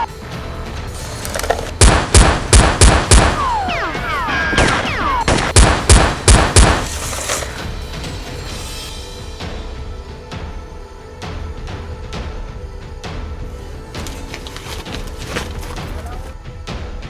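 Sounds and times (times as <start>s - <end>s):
rapid gunfire bursts: 1.8s - 7.0s
sliding whistle-like tones: 3.3s - 5.5s.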